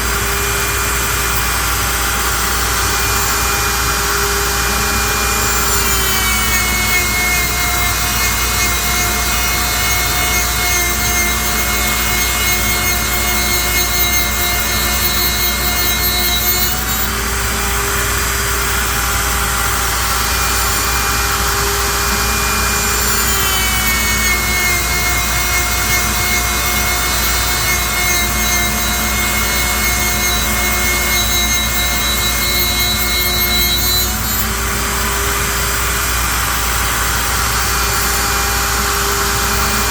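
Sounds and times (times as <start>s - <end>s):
lathe machine whine: 0.0s - 39.9s
tool scraping spinning wood: 0.0s - 39.9s.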